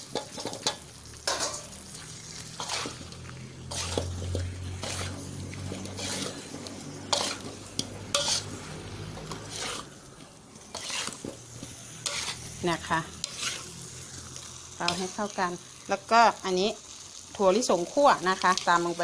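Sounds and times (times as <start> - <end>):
light sizzle: 0.0 - 19.0
utensil scraping a pot: 2.4 - 10.0, 10.7 - 12.6, 13.2 - 13.8.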